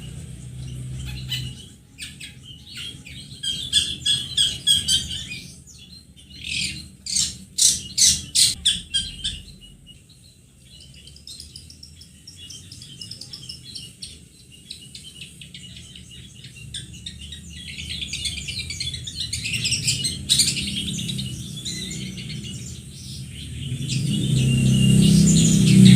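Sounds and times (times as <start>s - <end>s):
high twittering bird song: 0.0s - 25.9s.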